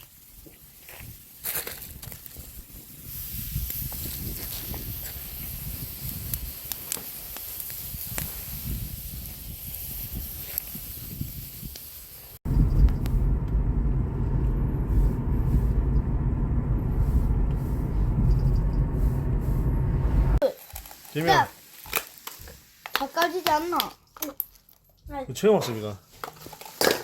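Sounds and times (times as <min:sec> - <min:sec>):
shellfish sizzling on grill: 0:00.0 - 0:12.4, 0:20.4 - 0:24.8
wood fire crackling and popping: 0:03.3 - 0:13.6, 0:20.7 - 0:24.9
car engine and road noise: 0:12.4 - 0:20.4.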